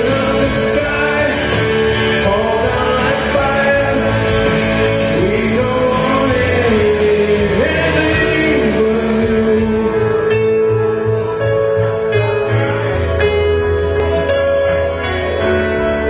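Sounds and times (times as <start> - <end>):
worship band music: 0.0 - 16.0.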